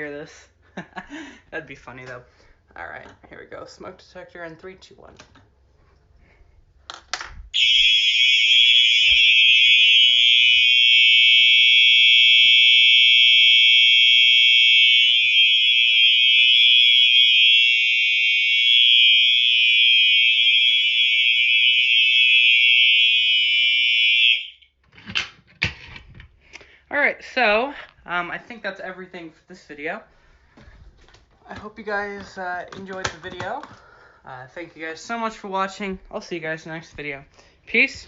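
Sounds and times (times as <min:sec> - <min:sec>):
smoke detector alarm tone: 0:07.6 - 0:24.8.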